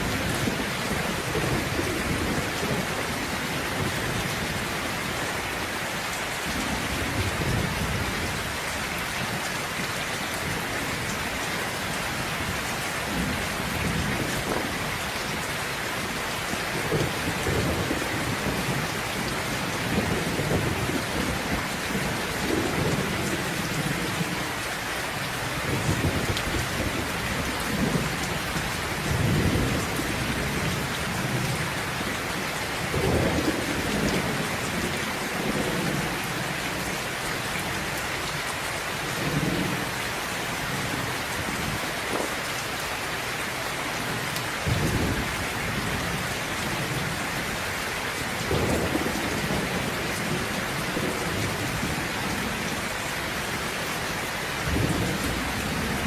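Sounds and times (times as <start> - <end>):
heavy rain falling: 0.0 - 56.0
thunder rumbling: 16.0 - 24.4, 44.0 - 47.6, 48.4 - 56.0.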